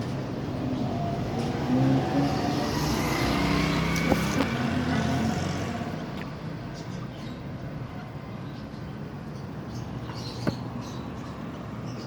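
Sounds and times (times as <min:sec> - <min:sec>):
vehicle engine passing by: 0:00.5 - 0:06.2.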